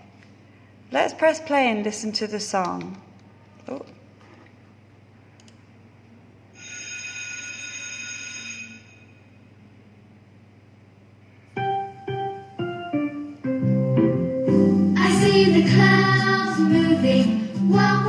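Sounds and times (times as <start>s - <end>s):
piano intro: 11.6s - 16.2s.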